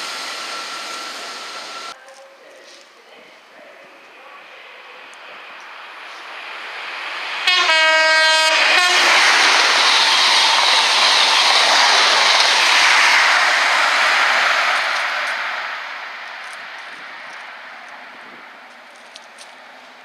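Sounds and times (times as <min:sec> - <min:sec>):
train passing at speed: 0:00.0 - 0:02.0, 0:03.5 - 0:20.0
train horn: 0:07.4 - 0:09.7.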